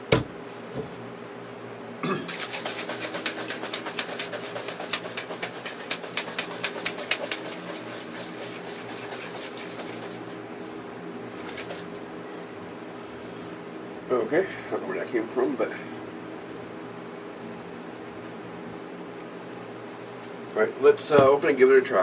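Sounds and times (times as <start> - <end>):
steady low hum: 0.0 - 22.0
shaker bottle sloshing: 2.3 - 10.4, 11.3 - 12.0.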